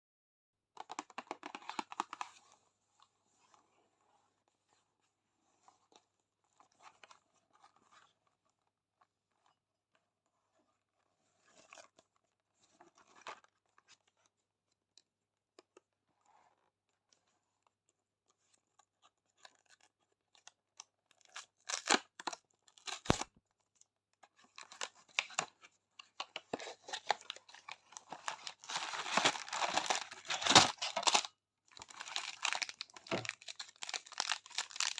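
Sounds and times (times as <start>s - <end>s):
plastic wrappers crinkling: 26.5s - 34.9s.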